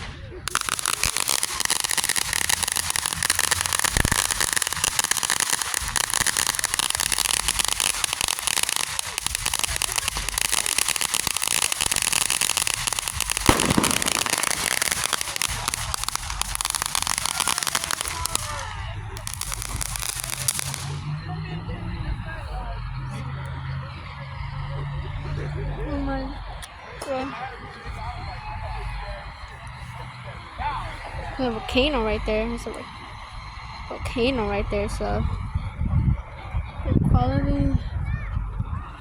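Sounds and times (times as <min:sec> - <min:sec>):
loud firework bang: 0:00.0 - 0:21.2
fireworks crackling: 0:00.0 - 0:36.8.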